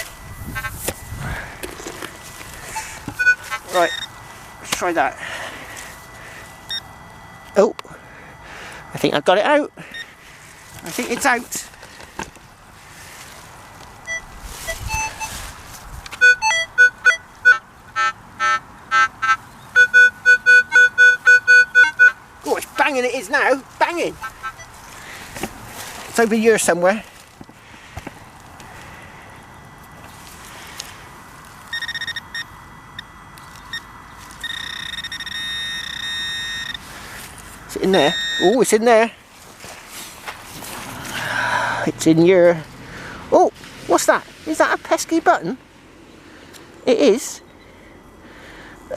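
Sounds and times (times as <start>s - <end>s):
metal detector beeps: 0.0s - 5.1s, 5.7s - 7.8s, 9.0s - 10.2s, 14.0s - 15.4s, 16.1s - 22.2s, 23.8s - 24.9s, 31.7s - 36.9s, 37.7s - 38.9s.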